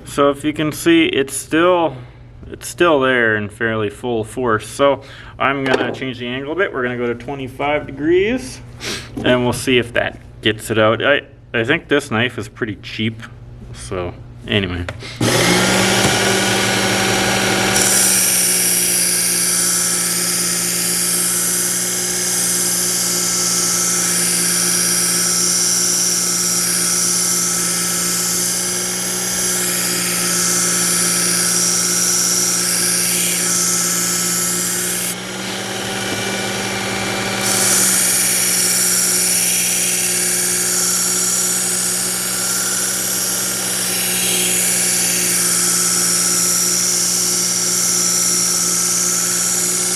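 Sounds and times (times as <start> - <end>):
belt sharpener motor humming: 15.2 - 49.9.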